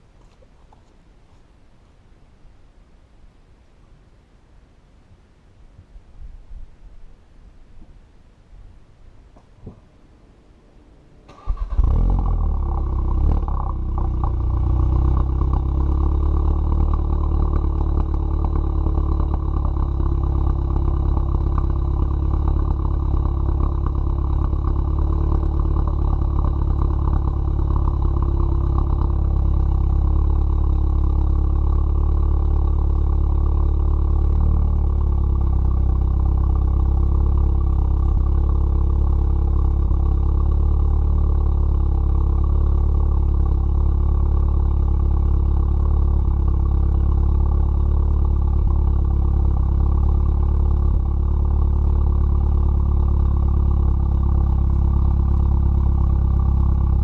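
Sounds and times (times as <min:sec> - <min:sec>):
car engine starting and idling: 0:09.3 - 0:57.0.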